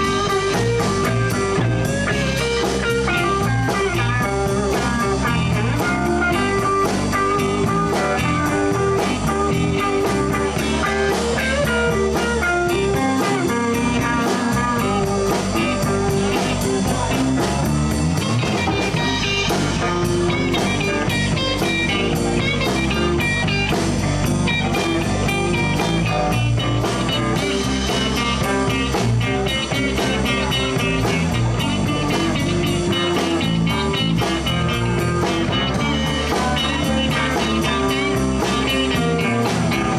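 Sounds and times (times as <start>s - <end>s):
blues band playing: 0.0s - 39.9s
lead guitar line: 0.0s - 39.9s.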